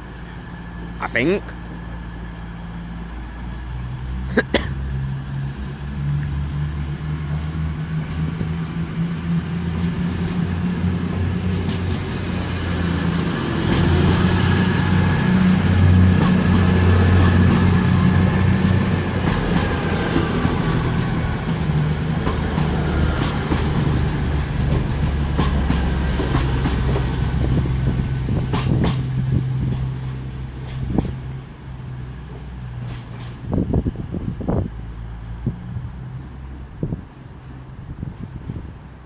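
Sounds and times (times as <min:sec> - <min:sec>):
diesel train engines pulling away: 0:00.0 - 0:39.0
wheels clicking on rails: 0:09.7 - 0:33.6.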